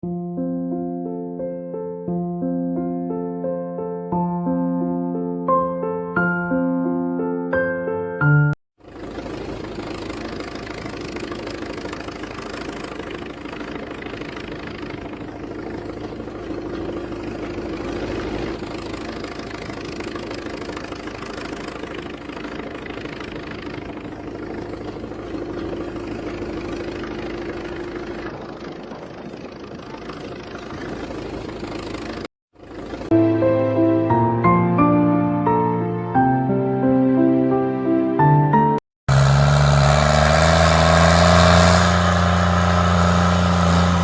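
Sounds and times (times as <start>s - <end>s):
heavy machinery diesel engine: 8.8s - 34.3s, 39.1s - 44.0s.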